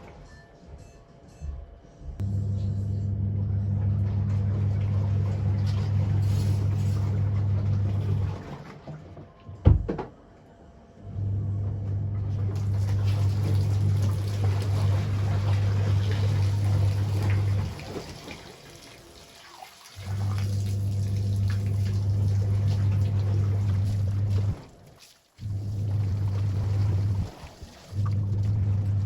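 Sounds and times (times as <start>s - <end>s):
water sounds: 12.4s - 29.0s
electric motor hum: 25.4s - 29.0s.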